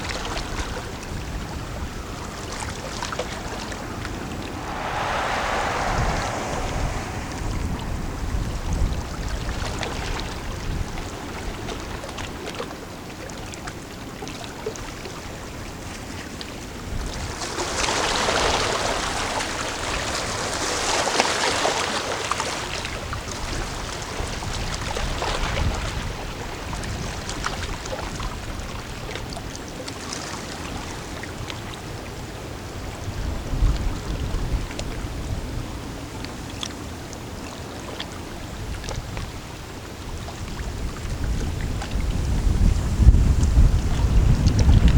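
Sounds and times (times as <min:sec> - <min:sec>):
wind on microphone: 0:03.7 - 0:09.8.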